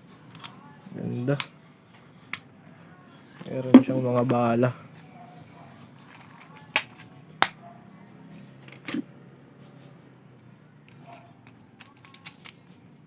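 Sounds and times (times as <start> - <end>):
small plastic parts clicking: 10.9 - 12.8.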